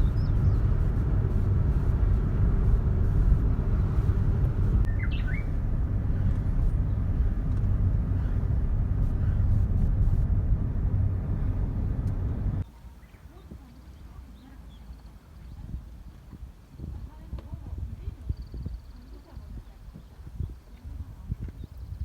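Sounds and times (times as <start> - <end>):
bird chirping: 0.0 - 10.1
loud steady low rumble: 0.0 - 12.7.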